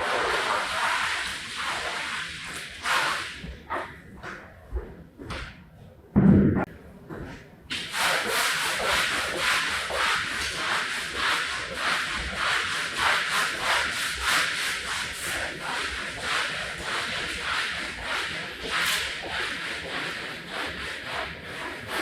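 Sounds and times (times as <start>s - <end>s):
rubbing strokes on a rug: 0.0s - 5.4s, 7.2s - 22.0s
thump: 6.2s - 6.7s.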